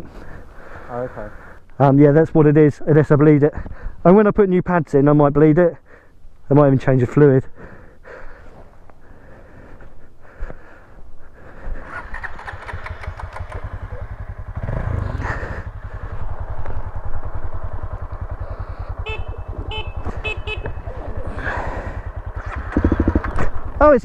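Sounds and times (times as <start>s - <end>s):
motorcycle engine idling: 7.5s - 24.0s.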